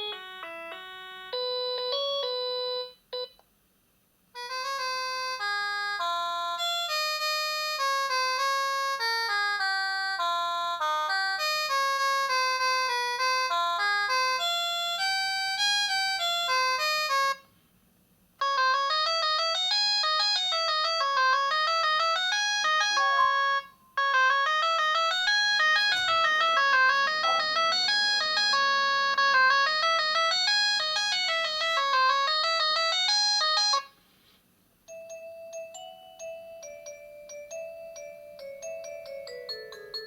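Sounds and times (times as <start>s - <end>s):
fast phone ringtone melody: 0.0s - 3.0s, 18.4s - 34.0s, 34.9s - 40.0s
slow ringtone of struck notes: 18.4s - 33.9s, 34.9s - 40.0s.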